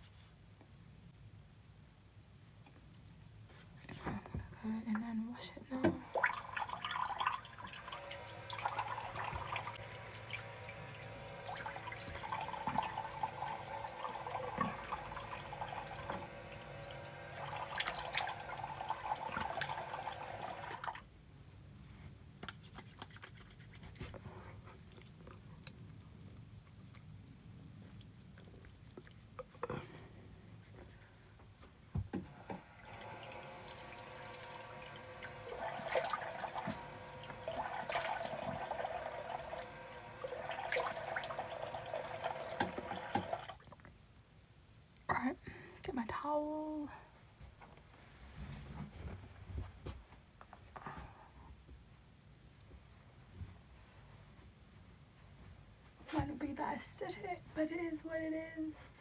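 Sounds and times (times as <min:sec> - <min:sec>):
tap running into basin: 0:05.8 - 0:21.0, 0:32.0 - 0:43.7.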